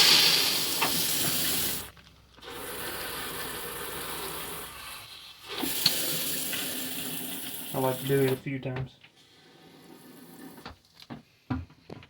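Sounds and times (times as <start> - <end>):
toilet flush water rushing: 0.0 - 8.4, 9.2 - 10.7.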